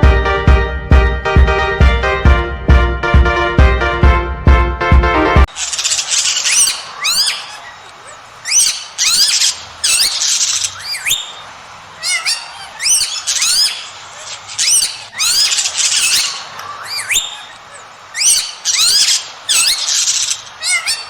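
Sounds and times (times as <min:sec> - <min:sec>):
bird squawking calls: 0:05.5 - 0:21.0.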